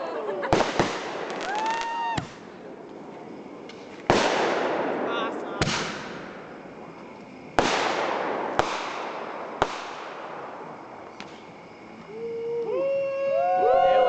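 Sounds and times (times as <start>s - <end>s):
fireworks bangs with hiss: 0.4s - 11.8s
steady whistling tone: 11.3s - 14.0s.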